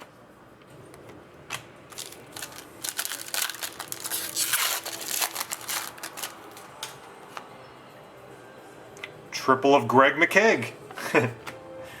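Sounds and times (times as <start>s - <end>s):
wrapper crinkling by hand: 1.9s - 7.0s.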